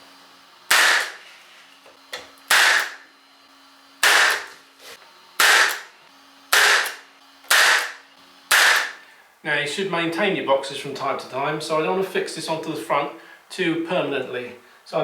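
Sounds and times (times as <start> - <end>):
hammer striking pins into wood: 2.5 - 3.0, 5.4 - 5.8, 6.6 - 9.0.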